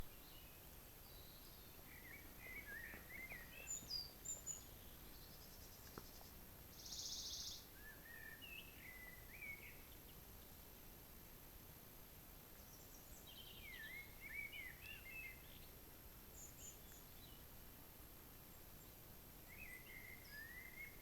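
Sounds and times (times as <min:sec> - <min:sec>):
birds chirping and warbling: 0:00.1 - 0:10.2.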